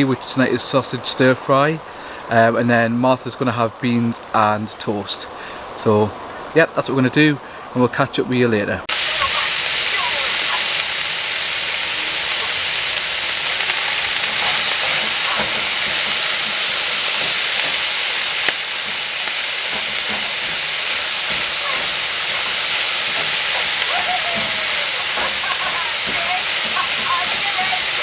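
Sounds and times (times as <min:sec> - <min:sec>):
rain on a roof: 0:08.8 - 0:28.0.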